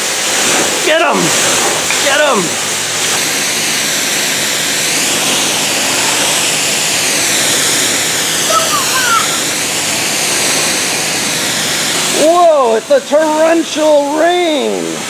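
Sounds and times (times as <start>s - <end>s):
water spraying and splashing: 0.0s - 15.0s
faint voice: 8.5s - 9.4s.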